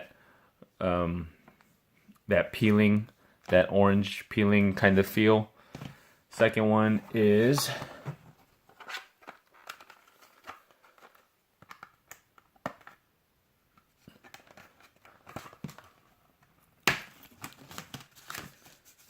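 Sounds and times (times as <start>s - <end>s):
plastic packaging clicks and rustles: 8.7s - 13.0s, 14.0s - 19.0s.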